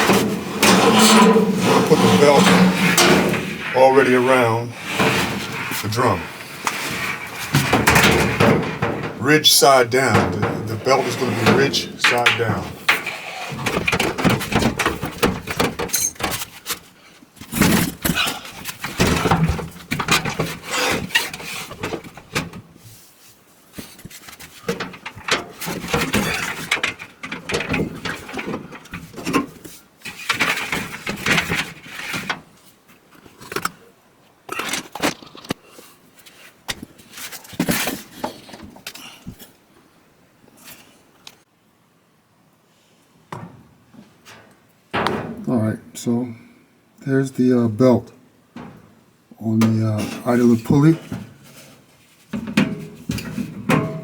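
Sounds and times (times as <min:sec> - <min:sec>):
sheet-metal clunks and rattles: 0:00.0 - 0:16.6, 0:17.4 - 0:22.8, 0:24.4 - 0:32.5, 0:43.3 - 0:45.5, 0:48.5 - 0:51.5, 0:52.3 - 0:54.0.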